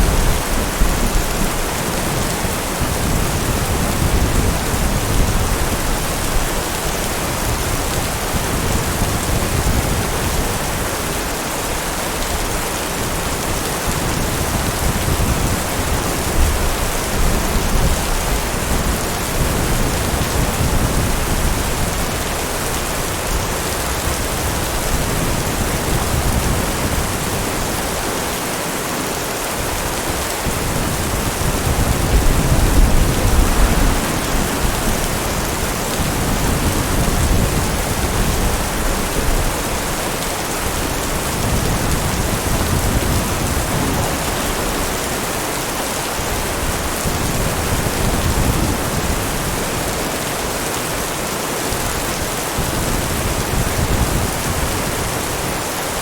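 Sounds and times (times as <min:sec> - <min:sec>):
heavy rain falling: 0:00.0 - 0:56.0
distant thunder rolling: 0:29.6 - 0:40.0.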